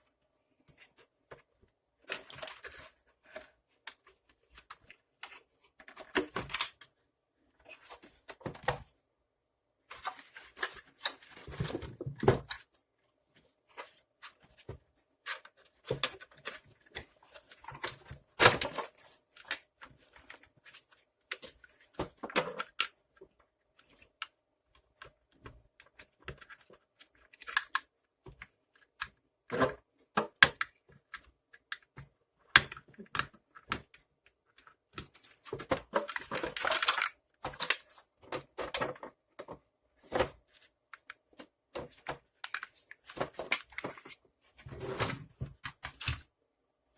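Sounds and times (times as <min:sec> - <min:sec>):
plastic parts clicking and knocking: 0:00.7 - 0:07.0, 0:09.9 - 0:12.8, 0:13.7 - 0:46.3
rustling and scraping: 0:34.6 - 0:46.3.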